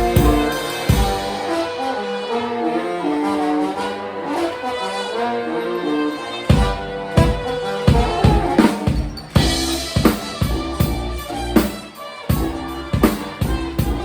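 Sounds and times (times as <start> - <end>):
drum kit beat: 0.0 - 1.6, 6.5 - 14.0
sustained instrument notes: 0.0 - 11.7.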